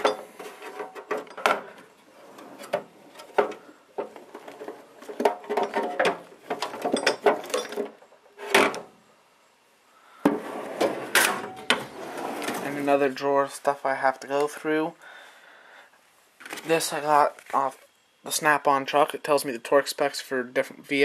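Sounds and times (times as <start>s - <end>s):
tools clinking: 0.0s - 1.6s, 5.2s - 8.0s
metal drawers opening and shutting: 0.0s - 8.9s, 10.3s - 13.0s.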